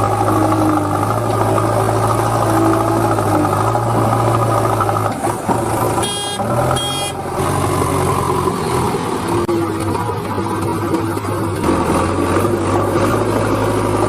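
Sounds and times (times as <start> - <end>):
short high-pitched beeps: 6.0 - 7.2.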